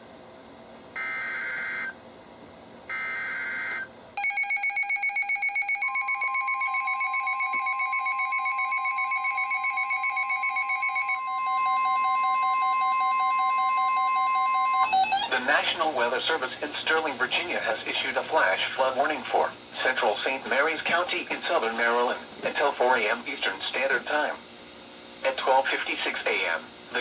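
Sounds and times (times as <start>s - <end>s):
rapidly pulsing alarm beeps: 2.9s - 15.4s
steady warning alert tone: 5.8s - 15.4s
buzzing digital tones: 14.8s - 15.3s.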